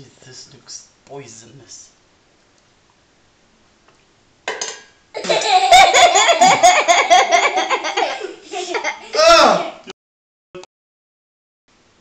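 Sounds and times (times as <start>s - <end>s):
young child laughing: 5.2s - 9.8s.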